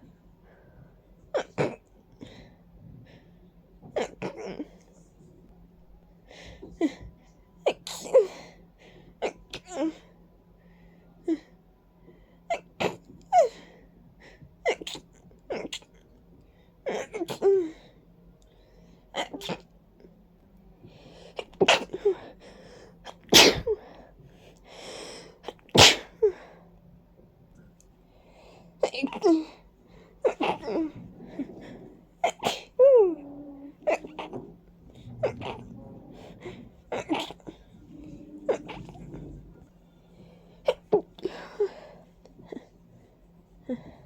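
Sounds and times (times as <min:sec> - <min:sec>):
person sneezing: 0:23.1 - 0:23.8, 0:25.5 - 0:26.2.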